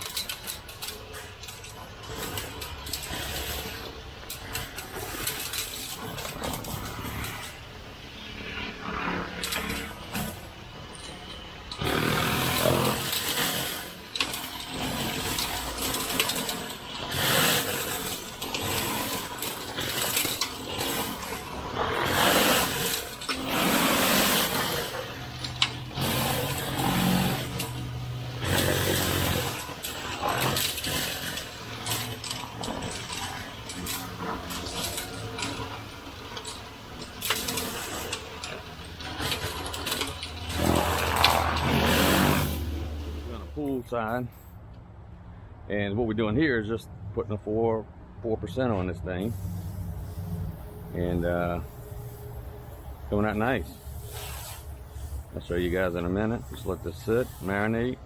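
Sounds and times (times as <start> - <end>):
sprayer pump humming: 11.7 - 43.5
spray hissing from nozzle: 53.7 - 55.4, 56.5 - 57.8.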